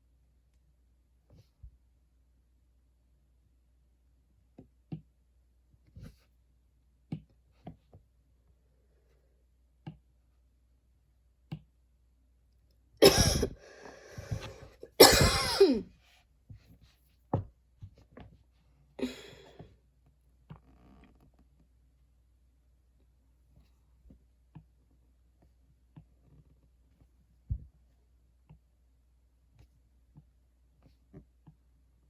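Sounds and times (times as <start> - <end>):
person coughing: 13.0 - 15.9, 19.0 - 19.6
noisy breathing: 13.1 - 15.4.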